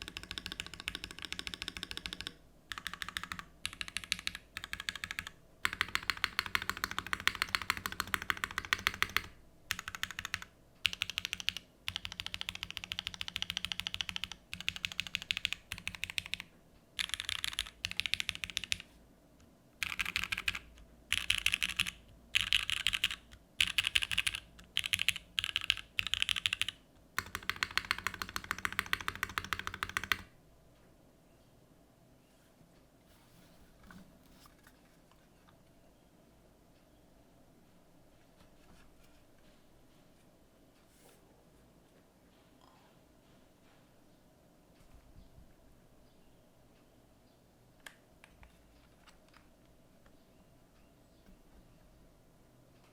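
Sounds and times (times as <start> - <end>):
mechanical keyboard typing: 0.0 - 18.9, 19.8 - 30.3.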